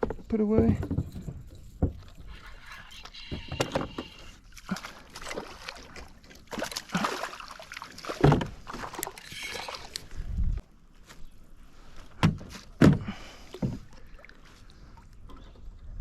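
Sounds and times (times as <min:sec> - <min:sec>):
fishing gear knocking and rattling: 0:00.0 - 0:02.2
water sloshing: 0:00.4 - 0:10.6, 0:13.0 - 0:16.0.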